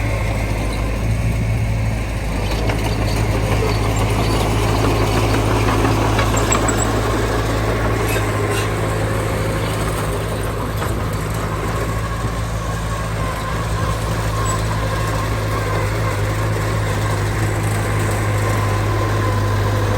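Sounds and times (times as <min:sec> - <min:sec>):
heavy diesel engine droning: 0:00.0 - 0:19.9.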